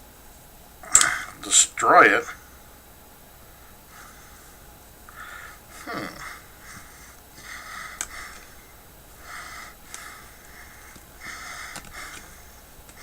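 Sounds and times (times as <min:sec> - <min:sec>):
heavy breathing through nose: 0:03.5 - 0:13.0.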